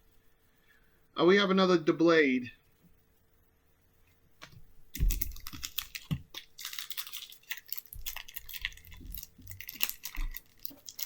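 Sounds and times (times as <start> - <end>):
trading cards and packaging crackling: 4.9 - 11.0.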